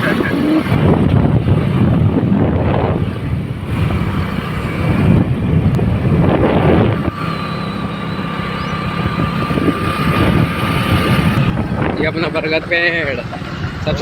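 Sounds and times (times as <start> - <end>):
motorcycle engine running: 0.0 - 14.0
wind buffeting microphone: 0.0 - 14.0
thin steady high tone: 7.0 - 9.9.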